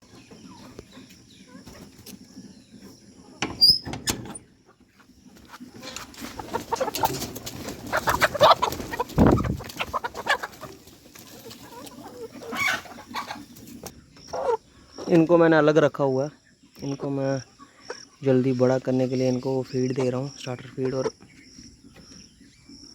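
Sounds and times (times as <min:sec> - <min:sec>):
chickens clucking: 0:00.0 - 0:22.9
rustling and wing flapping: 0:05.4 - 0:13.9.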